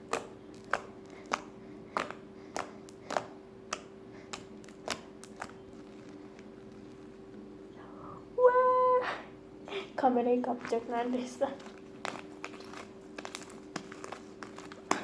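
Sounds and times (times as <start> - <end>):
slime squeezed by hand: 0.0 - 7.1.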